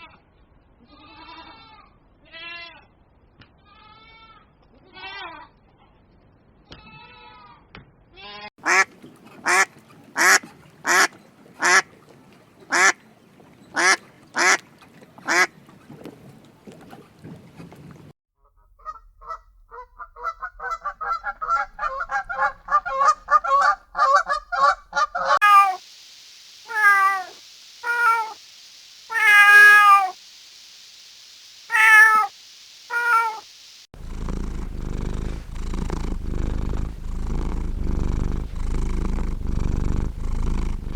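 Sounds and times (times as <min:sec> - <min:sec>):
animal calls: 0:19.8 - 0:40.9
cat purring: 0:20.9 - 0:40.9.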